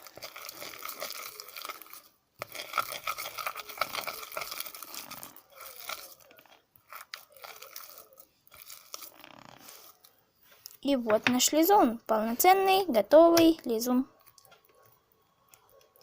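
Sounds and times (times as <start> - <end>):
slime squelching and crackling: 0.0 - 11.8.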